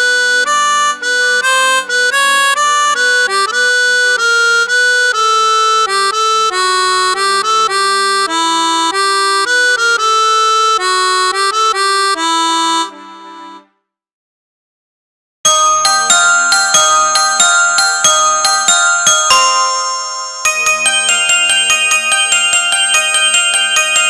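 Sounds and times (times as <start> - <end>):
synthesizer melody over chords: 15.5 - 24.0.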